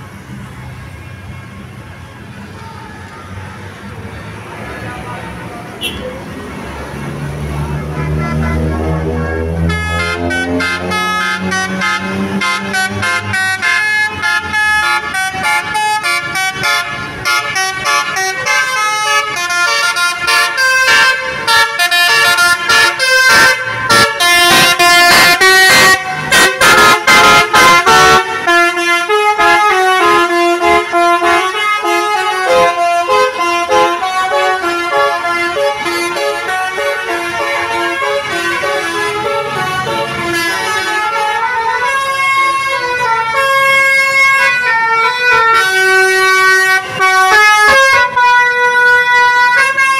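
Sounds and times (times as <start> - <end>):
multi-tone bus horn melody: 5.4 - 6.4, 7.0 - 49.9.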